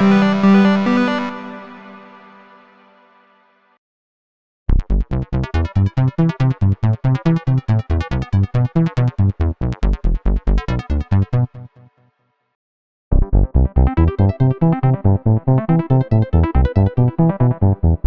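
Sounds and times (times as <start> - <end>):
sequenced bass-heavy synth notes: 0.0 - 2.4, 4.7 - 11.6, 13.1 - 18.0.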